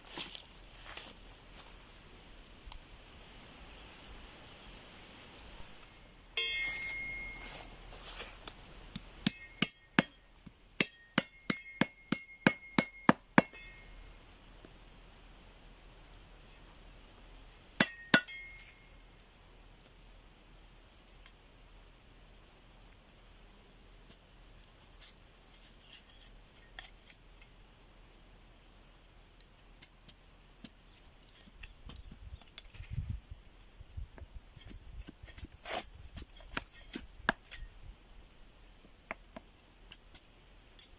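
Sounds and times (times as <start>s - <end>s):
sharp metallic strikes: 6.4s - 7.7s, 9.2s - 10.2s.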